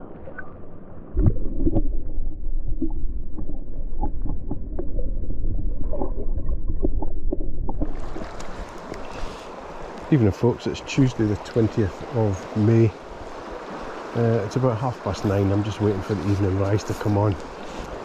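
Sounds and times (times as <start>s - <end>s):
underwater rumble and gurgle: 0.0s - 10.1s
knocks and pops underwater: 1.2s - 8.6s.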